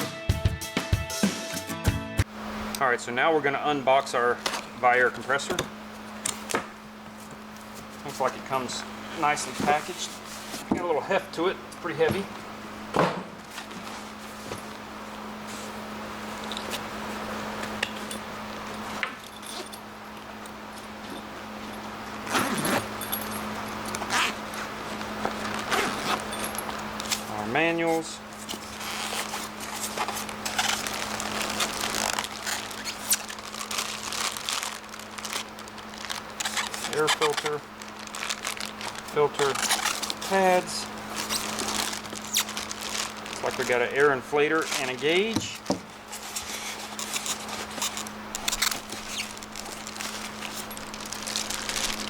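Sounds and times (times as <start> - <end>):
steady low hum: 2.2 - 52.0
packaging rustling and crinkling: 5.4 - 11.1, 22.3 - 52.0.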